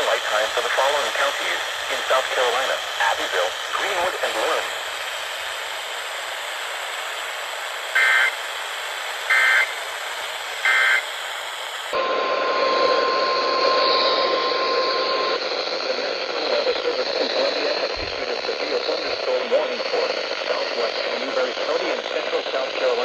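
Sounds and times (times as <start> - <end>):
steady radio hiss: 0.0 - 23.0
two-pitch data bursts: 8.0 - 8.4, 9.3 - 9.7, 12.0 - 19.3.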